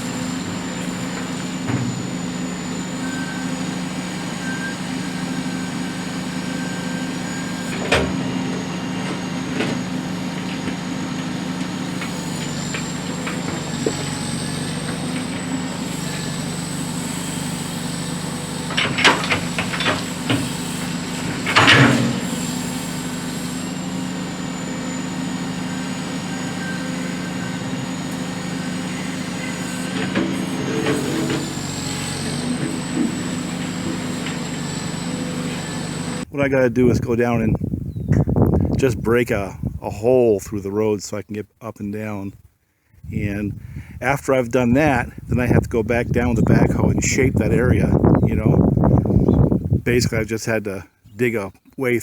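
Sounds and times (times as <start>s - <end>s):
diesel engine running: 0.0s - 36.4s
metallic clanks and knocks: 21.4s - 22.3s.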